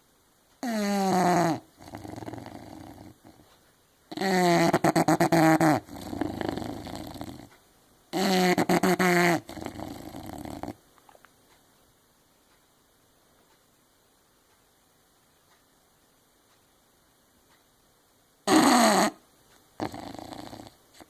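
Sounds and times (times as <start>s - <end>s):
dog snoring: 0.6s - 3.5s, 4.1s - 7.5s, 8.1s - 10.8s, 18.5s - 19.2s, 19.8s - 21.0s.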